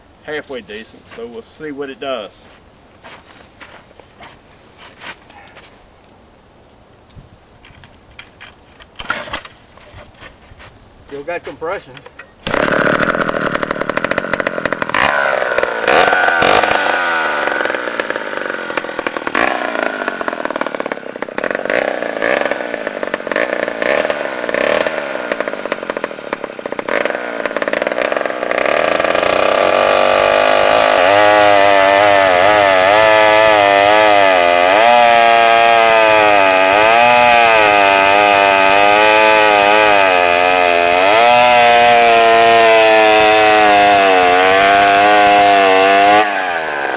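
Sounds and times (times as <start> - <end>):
chainsaw running: 12.4 - 46.9.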